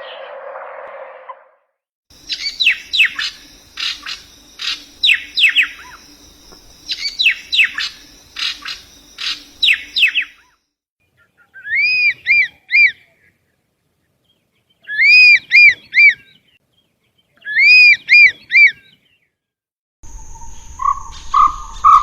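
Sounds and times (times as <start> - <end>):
bird calls dropping in pitch: 2.2 - 10.4
short arched bird chirps: 2.2 - 10.6.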